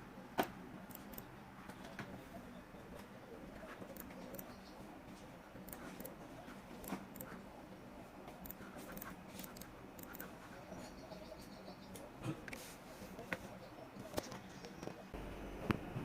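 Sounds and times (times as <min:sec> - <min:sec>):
low steady hum: 0:00.0 - 0:16.0
light irregular clicks and ticks: 0:00.4 - 0:02.1, 0:03.8 - 0:04.7, 0:05.6 - 0:07.4, 0:08.3 - 0:10.4.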